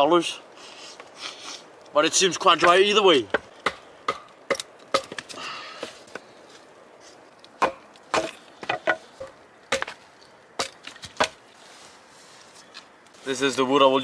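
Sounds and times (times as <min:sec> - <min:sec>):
axe chopping wood: 0:02.6 - 0:06.2, 0:07.6 - 0:10.0, 0:10.6 - 0:11.4.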